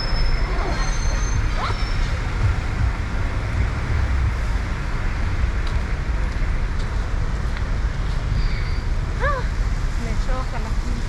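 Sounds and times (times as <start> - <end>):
street traffic rumble: 0.0 - 11.0.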